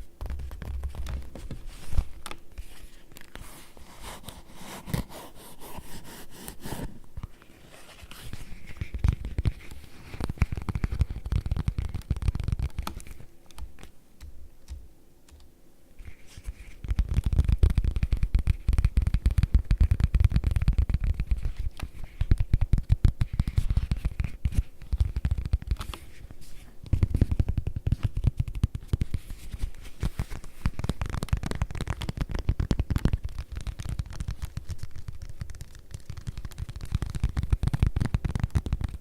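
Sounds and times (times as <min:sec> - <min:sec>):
rapid tapping on leather: 0:08.9 - 0:15.5, 0:16.7 - 0:25.9, 0:26.9 - 0:39.0.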